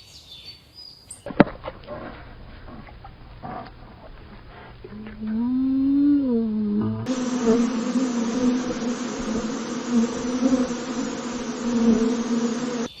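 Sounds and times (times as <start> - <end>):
low animal call: 4.5 - 12.9
insect buzzing: 7.0 - 13.0.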